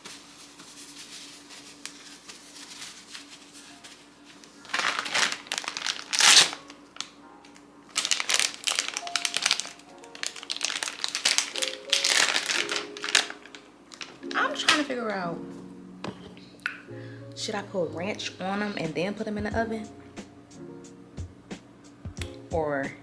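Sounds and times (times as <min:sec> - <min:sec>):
packaging crinkling: 0:00.0 - 0:15.1
quiet background music: 0:00.0 - 0:23.0.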